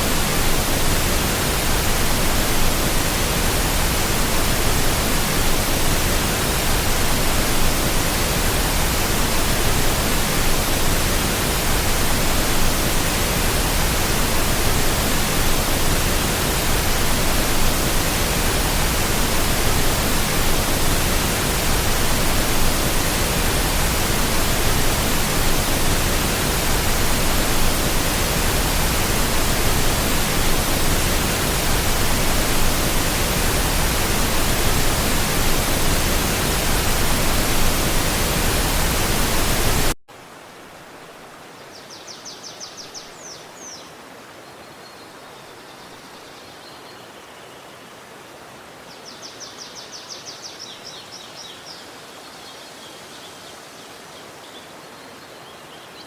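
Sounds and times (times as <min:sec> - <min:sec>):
rushing flowing water: 0:00.0 - 0:41.8.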